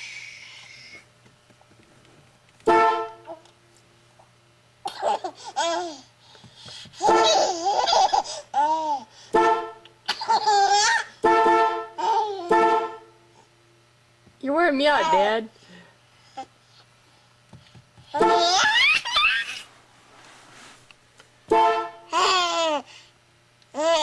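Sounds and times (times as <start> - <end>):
short horn honks: 2.6 - 3.3, 9.3 - 9.8, 11.2 - 13.2, 18.2 - 18.4, 21.5 - 22.1
baby laughing: 4.8 - 6.1, 7.0 - 9.0, 10.1 - 11.1, 12.0 - 12.5, 18.2 - 19.7, 22.1 - 22.8.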